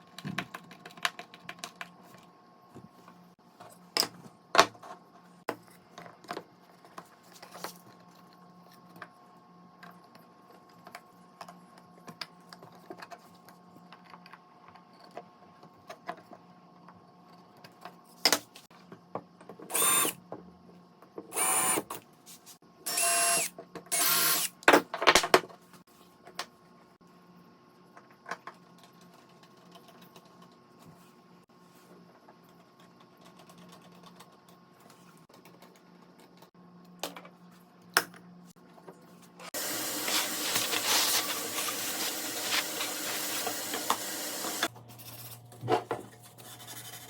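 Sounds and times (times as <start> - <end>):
small power tool running: 19.7 - 20.2, 21.3 - 22.0, 22.9 - 24.5, 39.6 - 44.7.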